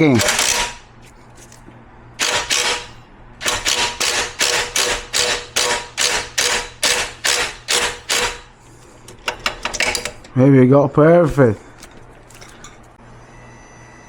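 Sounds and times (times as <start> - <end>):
ratchet wrench clicking: 2.2 - 8.4.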